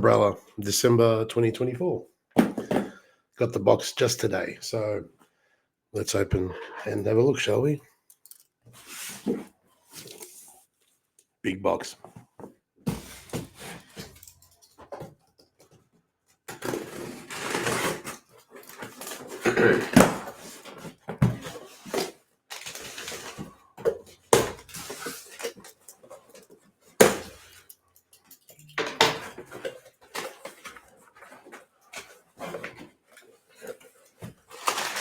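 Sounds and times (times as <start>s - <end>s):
cardboard rustling and scraping: 8.7s - 10.6s, 12.9s - 15.2s, 16.6s - 27.6s, 29.2s - 35.0s.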